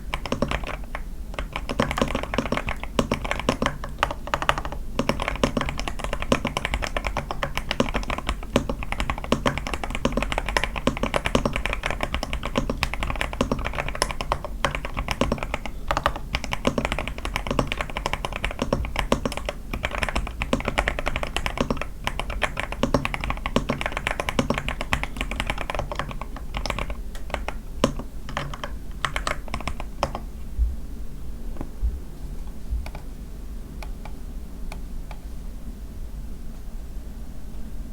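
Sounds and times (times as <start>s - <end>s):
mechanical keyboard typing: 0.0s - 30.3s.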